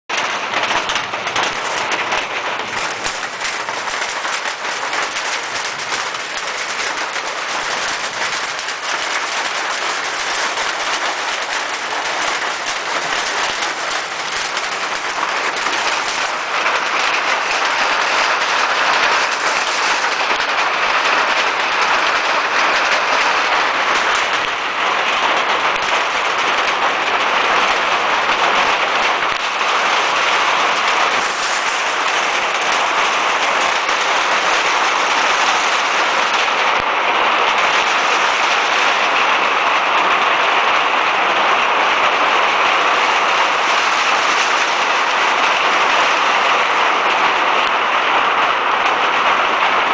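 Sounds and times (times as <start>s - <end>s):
rain patter: 0.1s - 49.9s.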